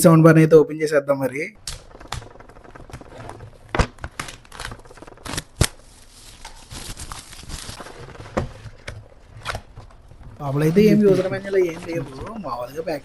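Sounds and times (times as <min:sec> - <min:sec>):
packaging rustling and sliding: 0:02.0 - 0:11.6.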